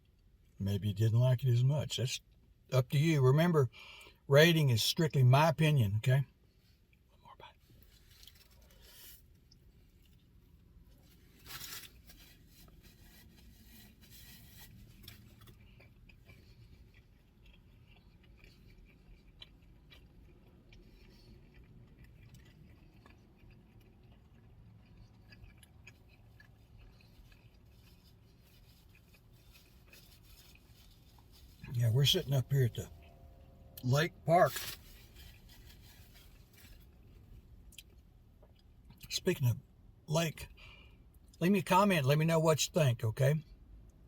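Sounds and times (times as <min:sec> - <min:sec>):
faint chewing: 0:06.6 - 0:39.0.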